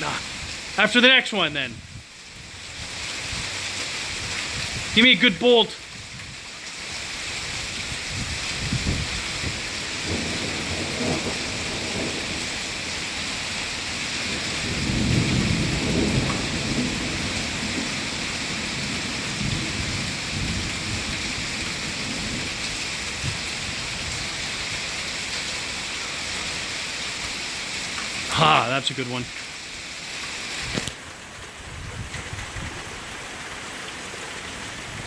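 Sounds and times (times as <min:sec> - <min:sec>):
rain falling: 0:00.0 - 0:35.0
thunder rumbling: 0:08.8 - 0:13.3, 0:14.0 - 0:22.5.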